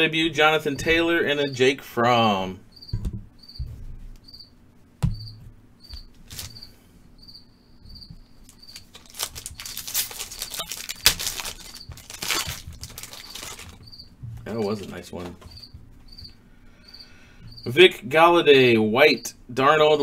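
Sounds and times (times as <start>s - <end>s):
cricket chirping: 2.7s - 3.6s, 4.2s - 4.5s, 5.1s - 8.9s, 9.6s - 14.2s, 15.5s - 17.7s
cards being handled: 5.9s - 6.7s, 8.4s - 13.8s
crinkly rustling: 6.2s - 6.7s, 8.4s - 16.1s.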